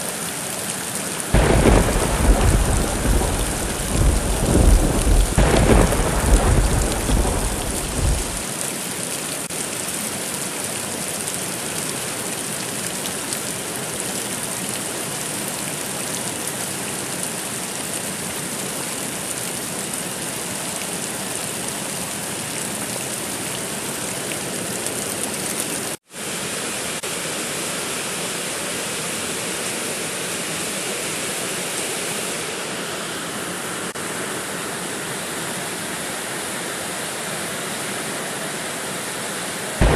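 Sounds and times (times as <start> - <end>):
heavy rain: 0.0 - 39.9
low thunder rumble: 1.4 - 8.4.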